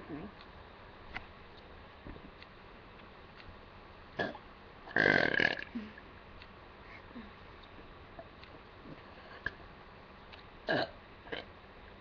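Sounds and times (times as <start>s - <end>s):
person burping: 4.2s - 6.0s, 10.7s - 11.5s.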